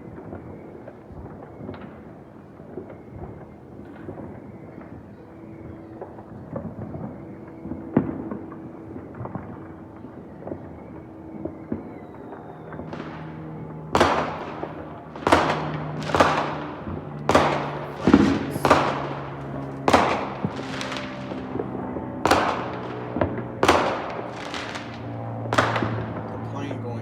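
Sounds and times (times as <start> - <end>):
fireworks exploding: 5.9 - 27.0
rolling echo of bangs: 12.7 - 27.0.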